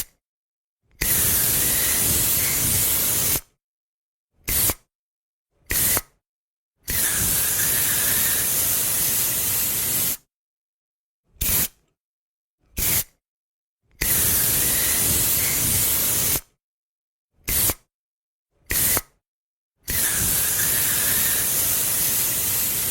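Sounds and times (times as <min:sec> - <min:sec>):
aerosol spray can hissing: 0:01.0 - 0:03.5, 0:04.5 - 0:04.8, 0:05.7 - 0:06.1, 0:06.9 - 0:10.3, 0:11.4 - 0:11.8, 0:12.8 - 0:13.1, 0:14.0 - 0:16.5, 0:17.5 - 0:17.8, 0:18.7 - 0:19.1, 0:19.9 - 0:22.9.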